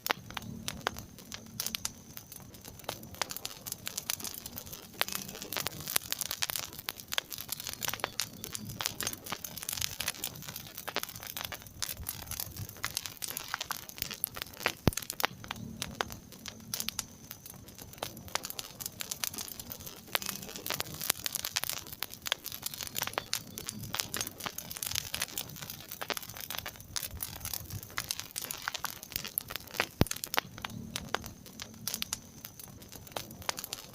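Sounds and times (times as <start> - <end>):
wood fire crackling: 0.0 - 33.9.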